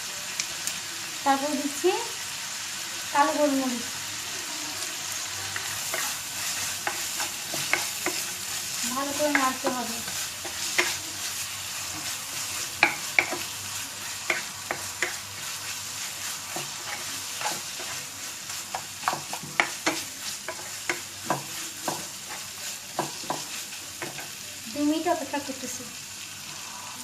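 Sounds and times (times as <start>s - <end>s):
food sizzling in a pan: 0.0s - 27.0s
spatula scraping a pan: 5.1s - 24.4s.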